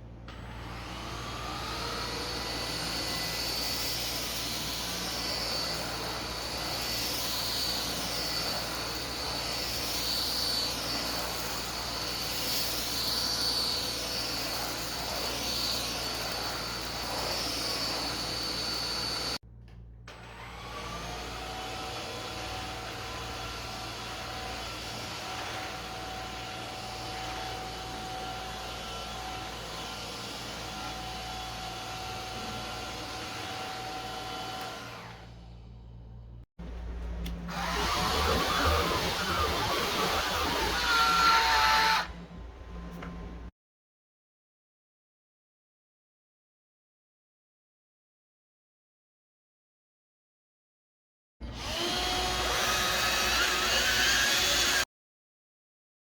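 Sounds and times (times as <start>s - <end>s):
stick vacuum running with whine: 0.3s - 19.4s, 36.6s - 43.5s, 51.4s - 54.8s.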